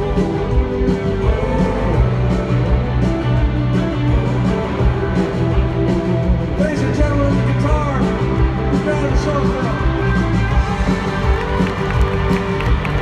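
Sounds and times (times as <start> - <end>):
person singing: 0.0 - 3.0
drums steady beat: 0.0 - 13.0
live country band: 0.0 - 13.0.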